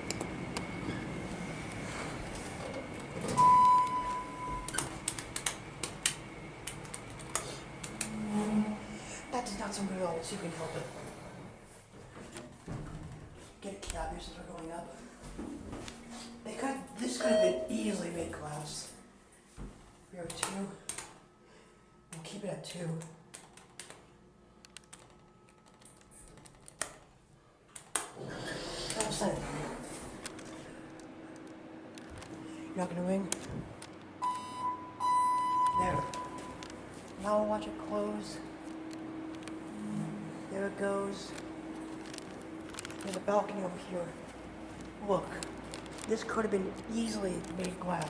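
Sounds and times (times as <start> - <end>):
faint elevator hum: 0.0 - 48.0
electronic beep: 3.4 - 4.8, 17.2 - 17.7, 34.2 - 36.6.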